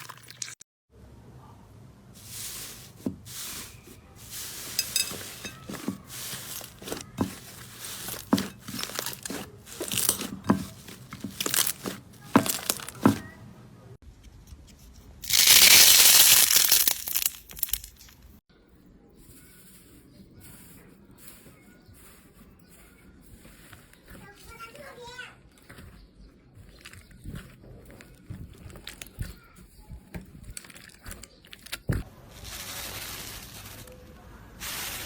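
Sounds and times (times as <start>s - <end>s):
rasping crinkling noise: 2.2s - 13.2s, 22.9s - 33.8s
slime crackling and popping: 15.2s - 18.0s.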